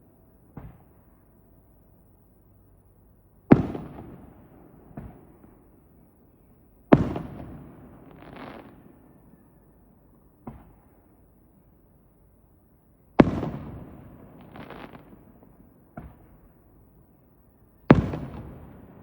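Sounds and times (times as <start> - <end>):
faint firework booms: 0.4 - 1.1, 3.4 - 11.4, 13.1 - 16.9, 17.7 - 19.0.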